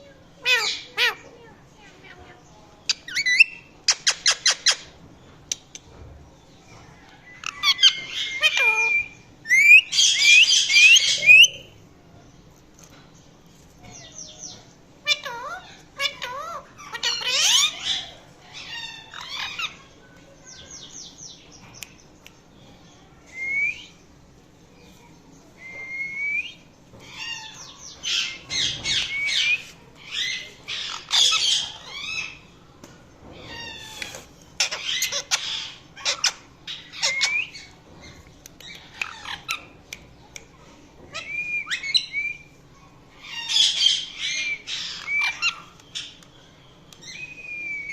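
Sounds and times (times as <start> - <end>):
parakeet screeching calls: 0.4 - 1.2, 15.0 - 19.8, 27.0 - 32.4, 33.5 - 37.7, 43.2 - 46.1.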